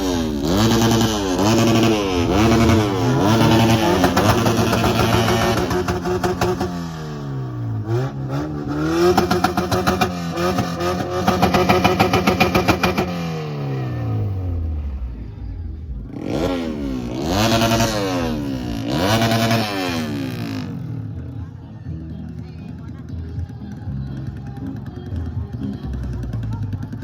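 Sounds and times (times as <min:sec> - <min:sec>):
vehicle engine revving: 0:00.0 - 0:21.4.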